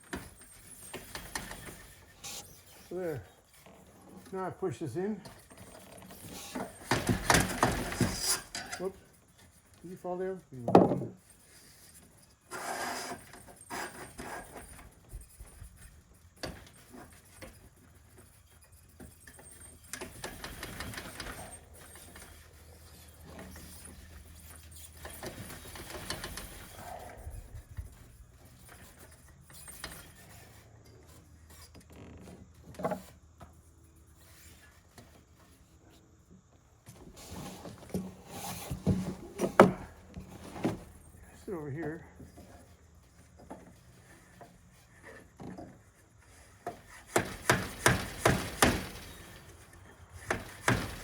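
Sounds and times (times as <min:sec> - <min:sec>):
hinge parts clicking and knocking: 0:05.2 - 0:09.0, 0:10.5 - 0:11.4, 0:18.9 - 0:27.2, 0:46.6 - 0:51.0.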